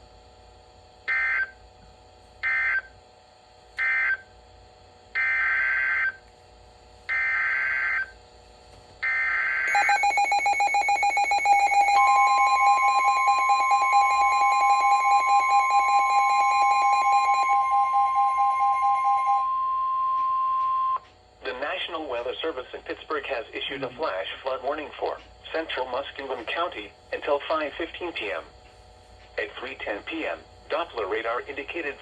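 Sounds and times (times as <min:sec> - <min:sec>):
steady warning alarm tone: 0:01.0 - 0:01.7, 0:02.4 - 0:03.0, 0:03.8 - 0:04.4, 0:05.1 - 0:06.2, 0:07.1 - 0:08.2, 0:09.0 - 0:21.1
pulsing electronic alarm beep: 0:01.1 - 0:01.6, 0:02.4 - 0:03.0, 0:03.8 - 0:04.3, 0:09.0 - 0:21.0
two-tone digital data bursts: 0:09.7 - 0:19.4.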